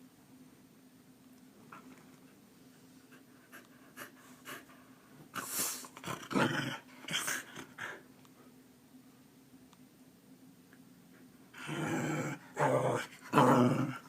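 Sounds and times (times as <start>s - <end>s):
dog panting and snuffling: 3.0s - 5.9s.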